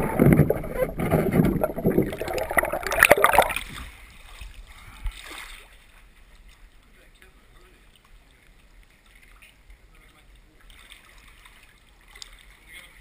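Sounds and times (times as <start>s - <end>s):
water splashing and sloshing: 0.0s - 13.0s.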